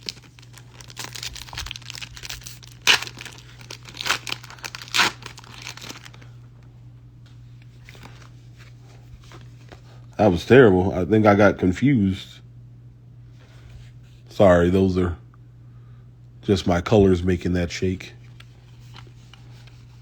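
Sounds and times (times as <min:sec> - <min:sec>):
plastic wrapper ripping: 0:00.0 - 0:06.3
plastic wrapper crinkling: 0:00.0 - 0:06.4.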